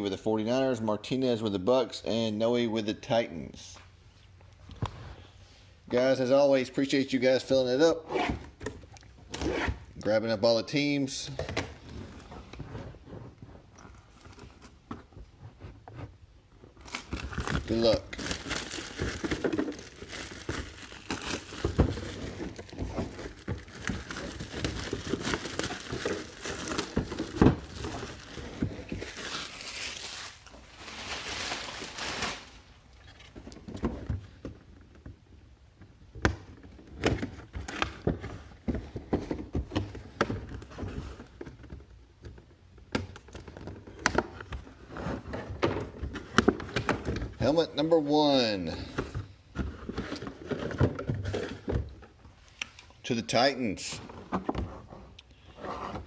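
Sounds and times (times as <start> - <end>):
plastic packaging crinkling and tearing: 16.8 - 33.2.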